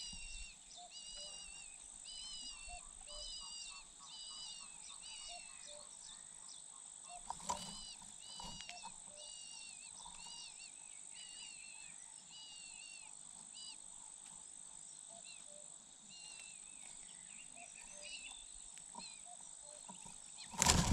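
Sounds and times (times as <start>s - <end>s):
small birds chirping: 0.0s - 20.9s.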